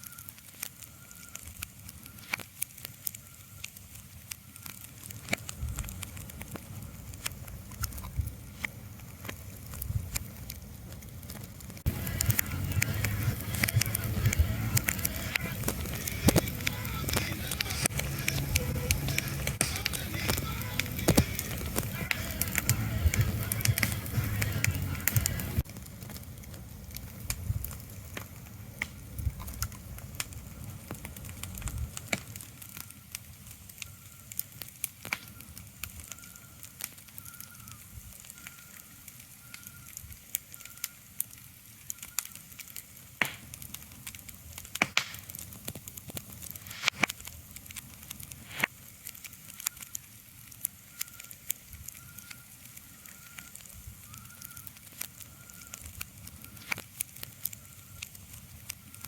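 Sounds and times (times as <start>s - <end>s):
sharp pops and crackles: 0.0s - 59.0s
low rumble: 11.9s - 25.7s.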